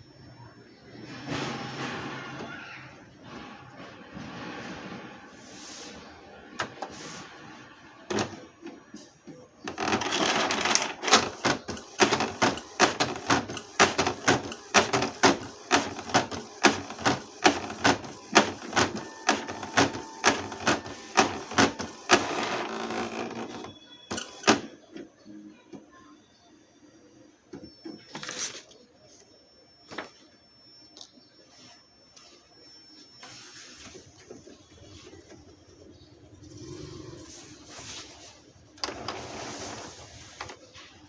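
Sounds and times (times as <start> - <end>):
printer grinding noise: 1.0 - 25.8, 33.2 - 40.8
printer mechanism clacking: 8.0 - 25.1
printer clicks: 8.1 - 8.8, 9.6 - 25.1.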